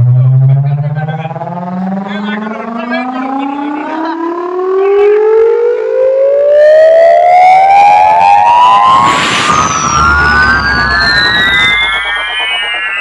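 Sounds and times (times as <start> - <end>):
high falling tone: 0.0 - 13.0
siren wailing tone: 0.0 - 13.0
rush of noise: 8.1 - 13.0.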